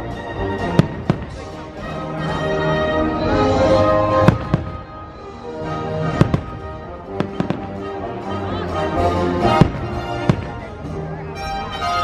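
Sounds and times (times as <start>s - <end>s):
music of long held notes: 0.0s - 12.0s
fireworks bangs: 0.6s - 2.0s, 4.0s - 5.0s, 5.7s - 7.9s, 9.4s - 11.0s.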